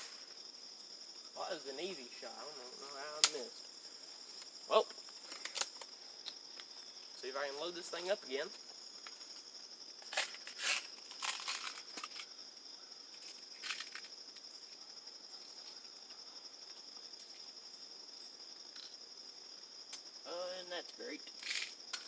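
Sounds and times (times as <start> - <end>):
air rifle clicks and rustles: 5.2 - 6.7, 21.3 - 22.0.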